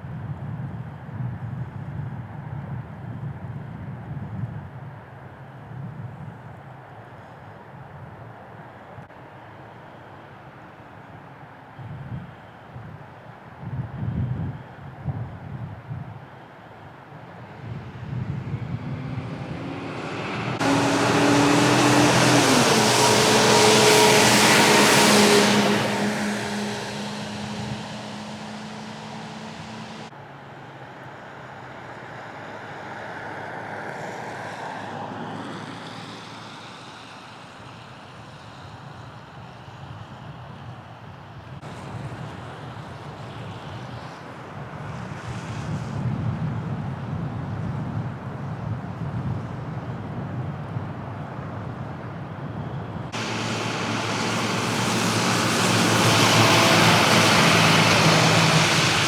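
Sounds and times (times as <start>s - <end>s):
vehicles passing on street: 4.9s - 59.0s
strong hiss: 53.2s - 59.0s.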